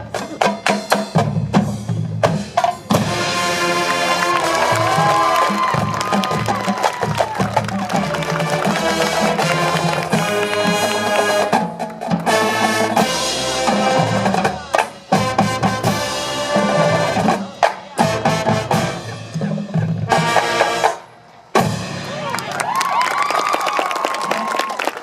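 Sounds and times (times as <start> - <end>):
snare and bass drumline: 0.0 - 22.5
brass chords: 2.9 - 6.6, 7.6 - 22.3.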